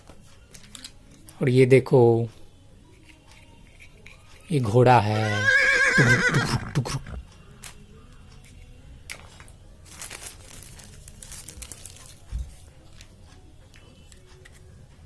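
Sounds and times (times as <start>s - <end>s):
packaging crinkling and rustling: 9.8s - 12.4s.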